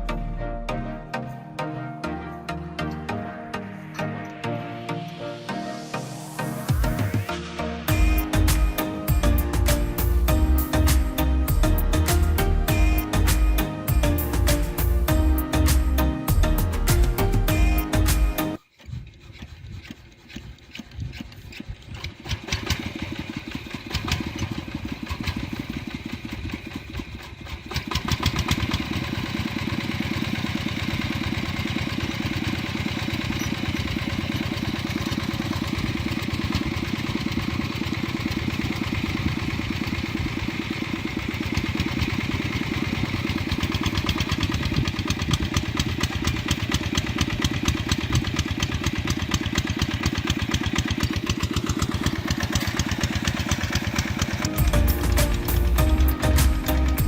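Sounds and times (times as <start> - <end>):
tractor engine running: 5.8 - 57.0.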